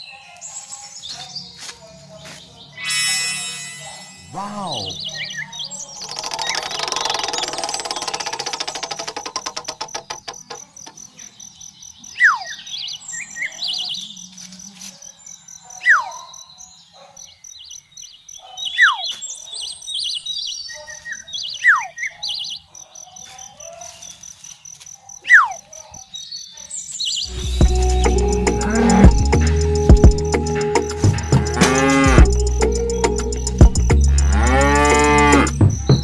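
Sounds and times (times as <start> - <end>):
bird chirps: 0.0 - 36.0
pulsing insect trill: 5.9 - 11.2, 27.3 - 36.0.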